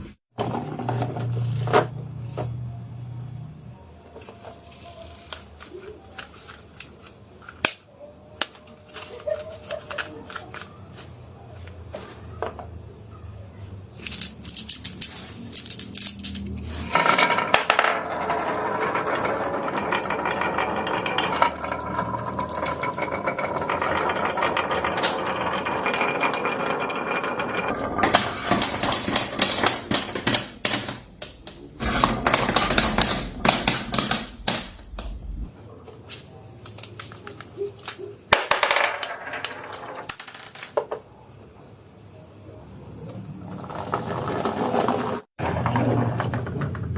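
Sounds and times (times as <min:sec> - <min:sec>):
marbles rolling down wooden run: 0:14.0 - 0:34.6, 0:38.3 - 0:41.0, 0:43.2 - 0:46.9.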